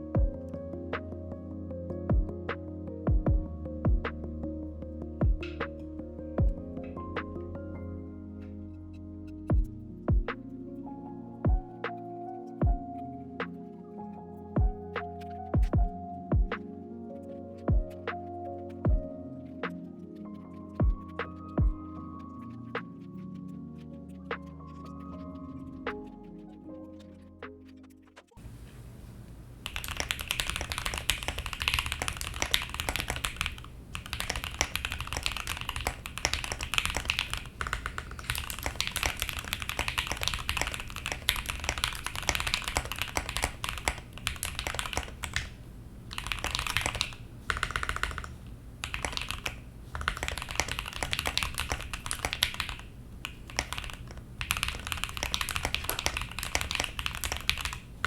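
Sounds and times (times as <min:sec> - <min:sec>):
rapid dense clicking: 0:46.1 - 0:57.8.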